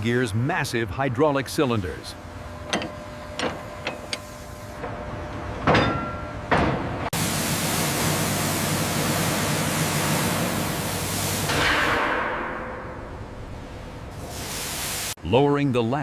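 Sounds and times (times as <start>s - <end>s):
loud steady hiss: 7.2s - 12.2s, 14.1s - 15.2s.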